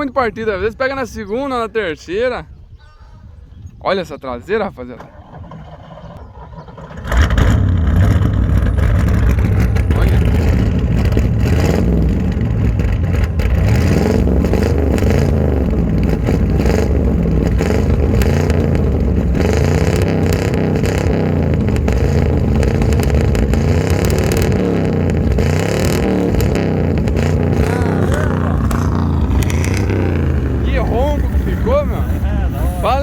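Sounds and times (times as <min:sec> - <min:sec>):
car engine revving: 0:06.7 - 0:33.0.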